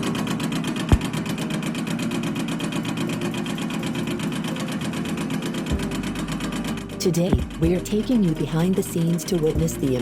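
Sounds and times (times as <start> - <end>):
tube-cutting machine chatter: 0.0 - 10.0.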